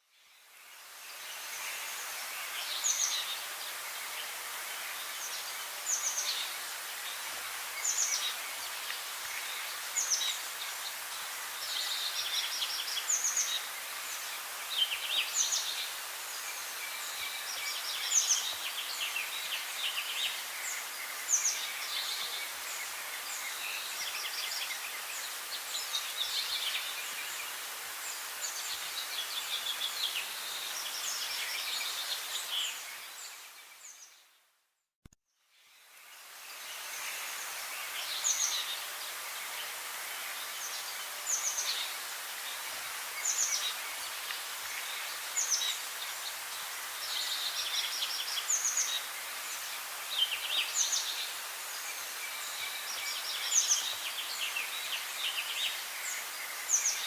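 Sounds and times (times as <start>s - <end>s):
steady background hiss: 0.0s - 34.2s, 35.6s - 57.0s.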